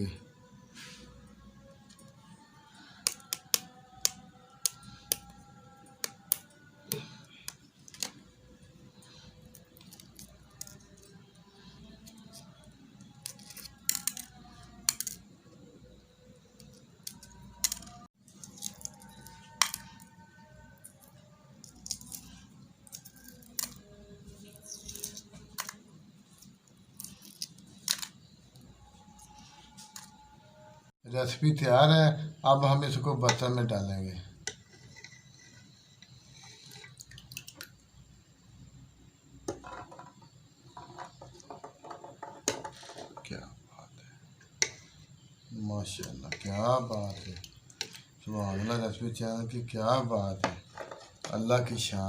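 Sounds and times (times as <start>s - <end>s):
faint background music: 0.0s - 52.0s
eggshell cracking: 3.0s - 5.4s, 16.6s - 20.1s, 20.9s - 23.9s.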